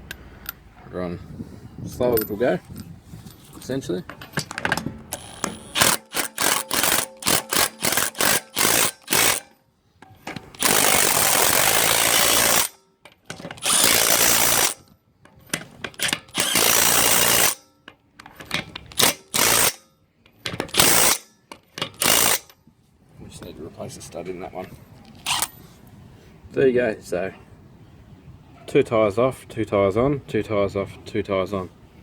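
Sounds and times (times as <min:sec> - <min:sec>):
impact wrench running: 0:05.0 - 0:09.5, 0:10.6 - 0:12.8, 0:13.6 - 0:14.8, 0:16.0 - 0:17.6, 0:19.0 - 0:19.8, 0:20.7 - 0:21.3, 0:21.9 - 0:22.5, 0:25.2 - 0:25.5.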